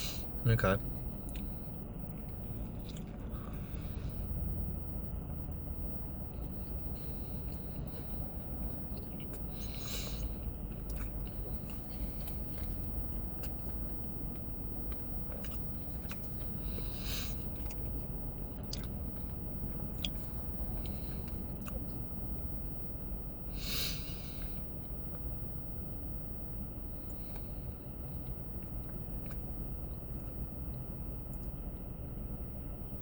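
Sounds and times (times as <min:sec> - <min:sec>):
chewing and biting sandwich: 0:00.0 - 0:33.0
steady low hum: 0:00.0 - 0:33.0
small wet clicks: 0:08.9 - 0:21.8
short hissy sounds: 0:23.6 - 0:24.3.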